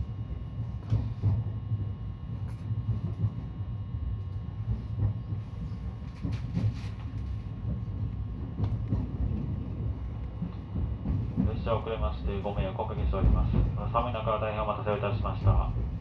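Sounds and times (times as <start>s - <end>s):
train wheels rumbling on rail: 0.0s - 16.0s.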